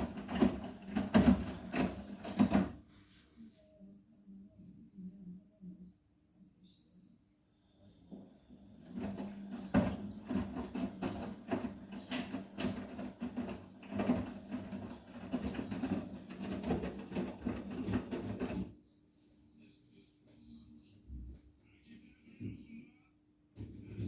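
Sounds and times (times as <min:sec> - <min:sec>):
wet laundry tumbling: 0:00.0 - 0:02.8, 0:08.9 - 0:18.7
washing machine motor hum: 0:00.0 - 0:03.2, 0:07.6 - 0:18.8.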